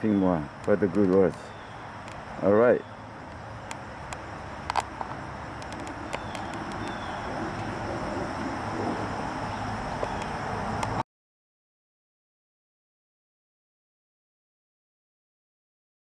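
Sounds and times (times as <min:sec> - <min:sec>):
steady hiss: 0:00.0 - 0:11.0
sharp clicks: 0:03.3 - 0:07.7.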